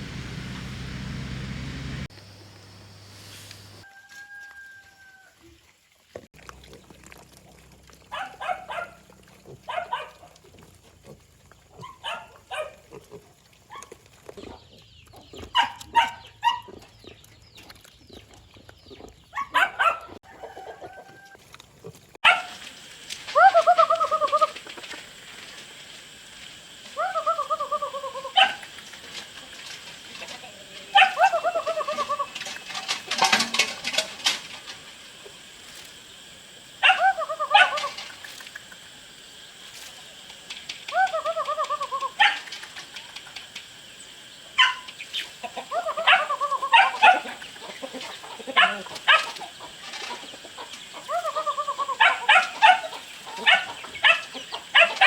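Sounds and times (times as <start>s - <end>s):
dog yelping: 8.1s - 9.0s, 11.8s - 12.8s, 19.4s - 20.2s, 27.0s - 28.7s, 30.9s - 32.4s, 36.8s - 38.1s, 40.9s - 42.5s, 44.6s - 44.9s, 45.7s - 47.4s, 48.4s - 49.4s, 51.1s - 55.0s.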